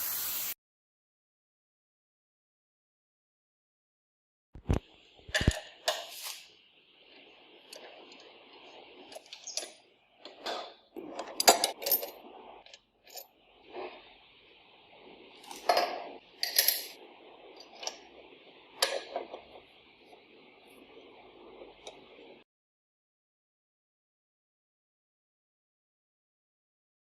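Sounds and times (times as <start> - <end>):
faint steady hiss: 0.0 - 0.6, 4.7 - 22.4
metal tools clinking: 10.4 - 12.3, 15.5 - 17.0.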